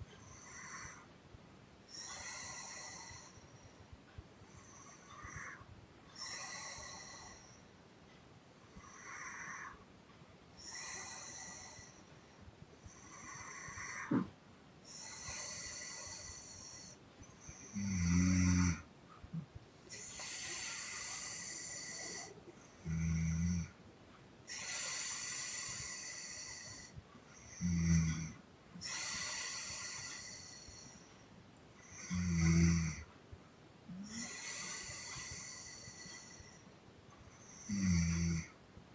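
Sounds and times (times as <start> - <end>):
woman snoring: 0.2 - 1.0, 1.9 - 3.4, 4.6 - 7.6, 8.8 - 9.8, 10.6 - 12.0, 12.9 - 18.9, 19.9 - 23.8, 24.5 - 31.0, 31.8 - 33.1, 33.9 - 36.6, 37.4 - 38.6
airy puffing breaths: 19.8 - 22.6.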